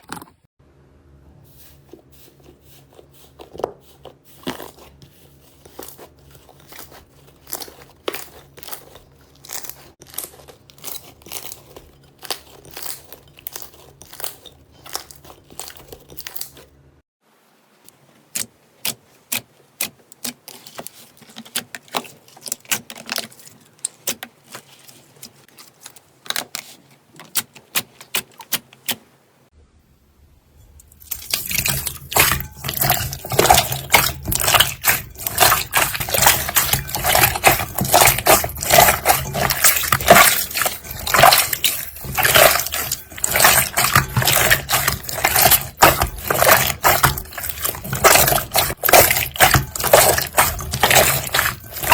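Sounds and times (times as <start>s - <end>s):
slime squelching and popping: 5.7s - 16.6s, 30.9s - 51.9s.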